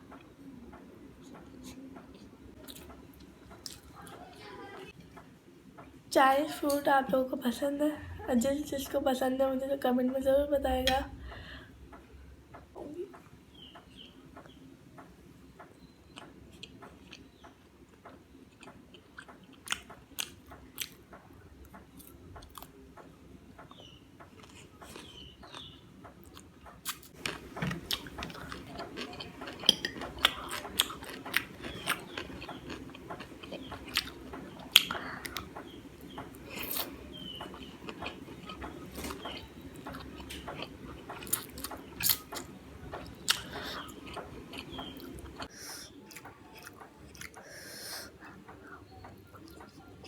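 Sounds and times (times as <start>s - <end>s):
crunchy clicks of chewing: 0.0s - 6.0s, 11.9s - 50.0s
person chewing with wet smacks: 0.1s - 5.2s, 15.6s - 22.7s, 23.6s - 50.0s.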